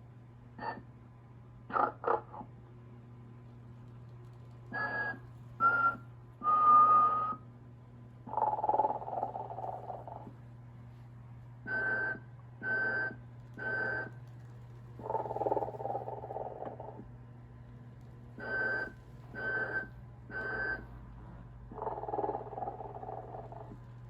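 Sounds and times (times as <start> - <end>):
low hum: 0.1 - 24.0
toy snoring: 8.3 - 10.3, 15.0 - 17.0, 21.7 - 23.8.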